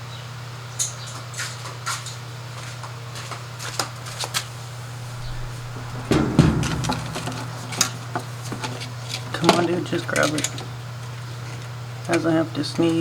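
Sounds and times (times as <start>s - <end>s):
loud clunk: 4.3s - 9.2s
steady low hum: 4.4s - 9.1s.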